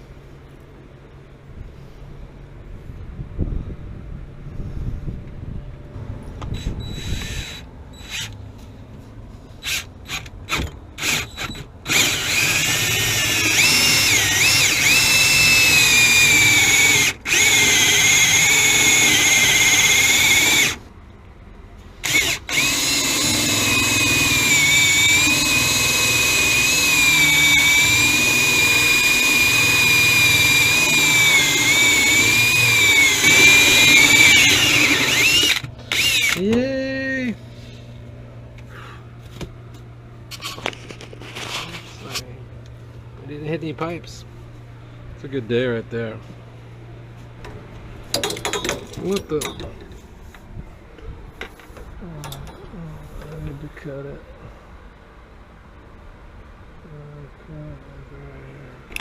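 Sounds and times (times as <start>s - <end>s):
power drill boring: 6.6s - 8.4s, 9.6s - 20.8s, 22.0s - 36.5s.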